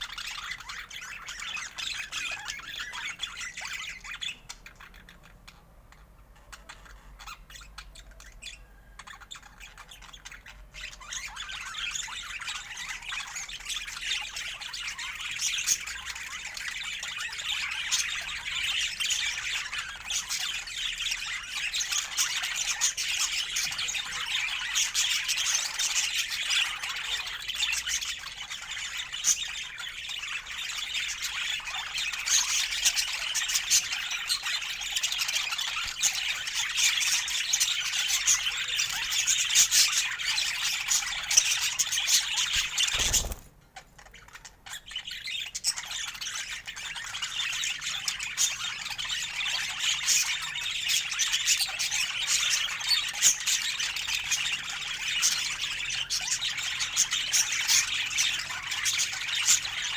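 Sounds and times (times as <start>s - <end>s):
budgerigars chattering: 0.0s - 59.9s.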